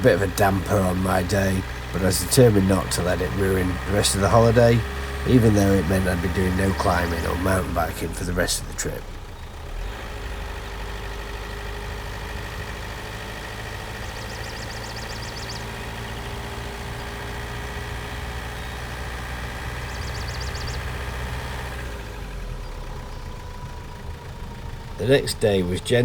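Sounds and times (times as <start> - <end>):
vehicle engine rumbling: 0.0 - 26.0
fast high ticking: 10.6 - 21.8.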